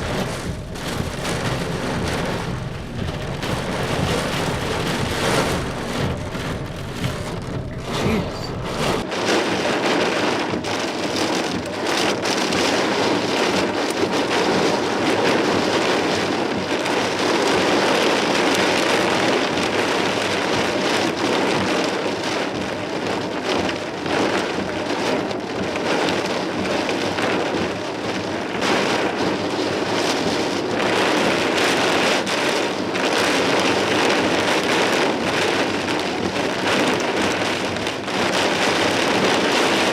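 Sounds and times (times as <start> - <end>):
low rumble: 0.0 - 9.1
torrential rain pouring: 0.0 - 39.9.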